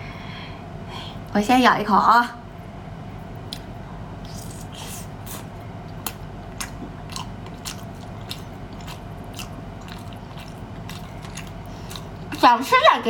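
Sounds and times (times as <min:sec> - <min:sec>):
steady low hum: 0:00.0 - 0:13.0
wet chewing and mouth smacks: 0:03.4 - 0:12.5.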